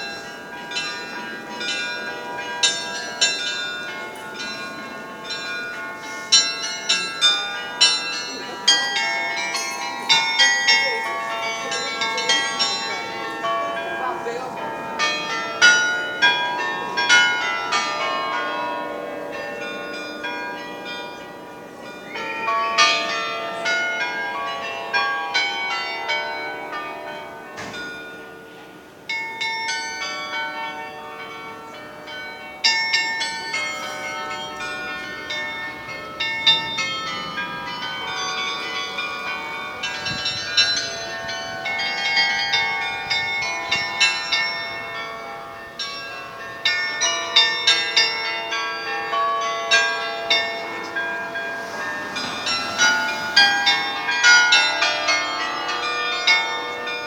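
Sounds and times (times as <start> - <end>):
carillon bells playing a melody: 0.0 - 57.0.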